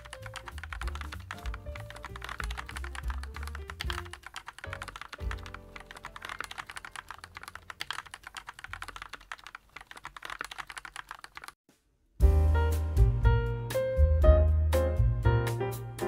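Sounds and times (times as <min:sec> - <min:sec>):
quiet background music: 0:00.0 - 0:07.8
mechanical keyboard typing: 0:00.0 - 0:11.6.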